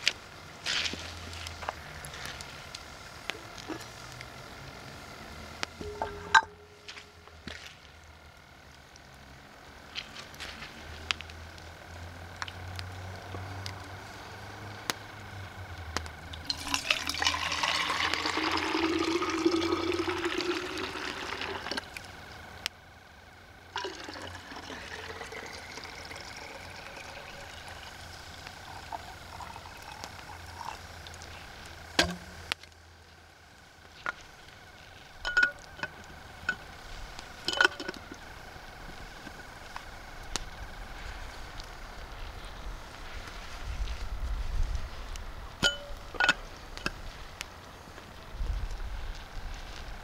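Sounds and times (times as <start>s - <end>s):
hot water pouring into container: 16.3s - 22.5s, 23.7s - 32.5s.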